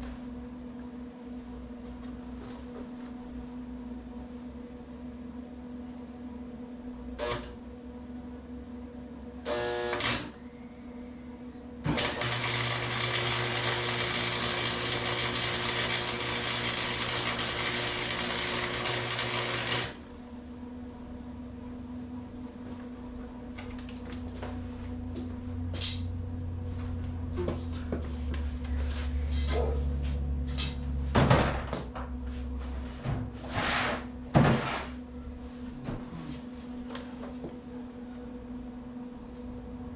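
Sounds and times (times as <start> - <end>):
arc welder crackling buzz: 7.2 - 7.6, 9.4 - 10.4, 11.8 - 20.6.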